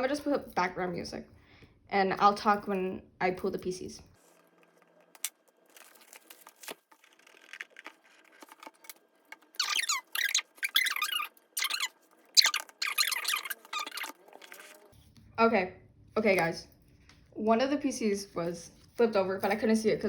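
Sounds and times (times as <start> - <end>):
plastic wrapping crinkling: 4.7 - 14.8
plastic wrapping tearing: 5.2 - 9.0.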